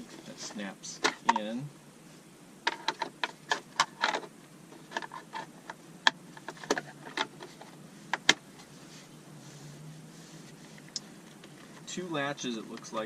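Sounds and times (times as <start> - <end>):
hard plastic clicks and knocks: 2.6 - 4.3.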